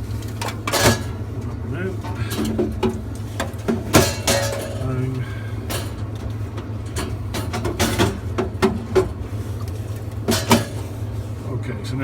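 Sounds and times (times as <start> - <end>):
steady low hum: 0.0 - 12.0
cans knocking against metal column: 2.1 - 4.9, 10.2 - 10.9.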